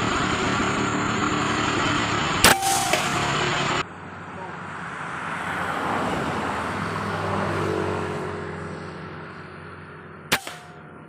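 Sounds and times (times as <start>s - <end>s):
vehicle passing: 0.0s - 11.0s
sharp crack: 2.4s - 3.8s, 10.3s - 11.0s.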